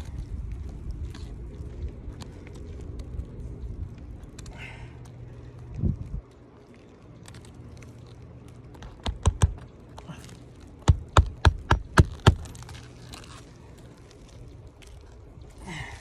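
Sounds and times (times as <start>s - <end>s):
hammer striking roofing nails: 8.9s - 9.6s, 10.8s - 12.5s.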